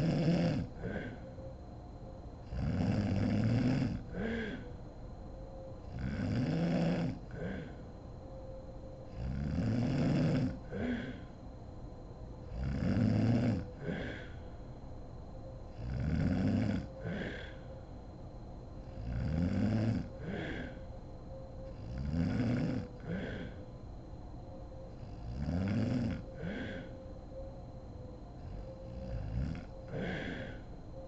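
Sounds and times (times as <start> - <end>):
woman snoring loudly: 0.0 - 1.2, 2.5 - 4.6, 5.9 - 7.8, 9.1 - 11.2, 12.5 - 14.3, 15.8 - 17.5, 18.9 - 20.8, 21.7 - 23.6, 25.0 - 26.9, 28.4 - 30.6.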